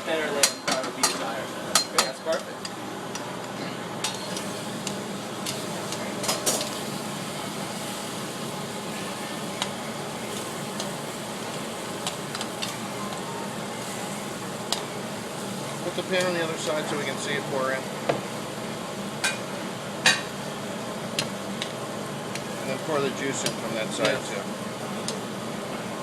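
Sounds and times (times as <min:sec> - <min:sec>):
sauce sizzling in a pan: 0:04.2 - 0:21.5.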